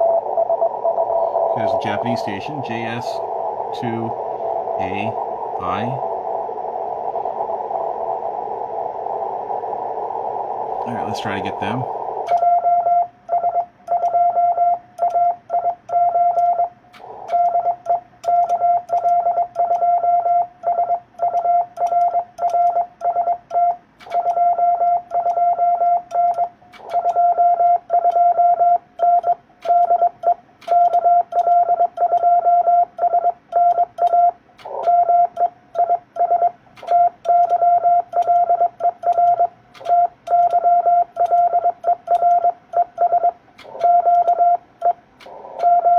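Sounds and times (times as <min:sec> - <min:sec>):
morse code tone: 0:01.2 - 0:06.0, 0:10.7 - 0:45.9
faint keying clicks: 0:21.2 - 0:24.4, 0:29.0 - 0:32.3, 0:33.5 - 0:45.8.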